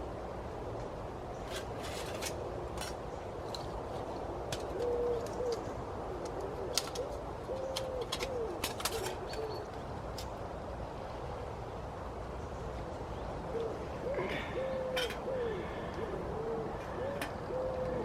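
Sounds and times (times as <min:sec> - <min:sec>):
steady background hiss: 0:00.0 - 0:18.0
pigeon cooing: 0:04.5 - 0:09.7, 0:13.5 - 0:18.0.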